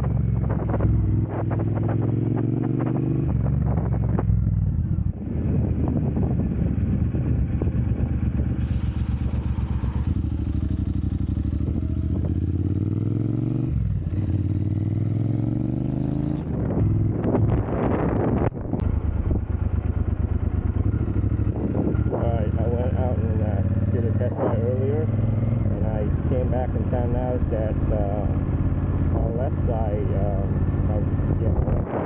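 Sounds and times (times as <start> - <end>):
motorcycle engine idling: 6.4 - 13.0, 18.8 - 31.3.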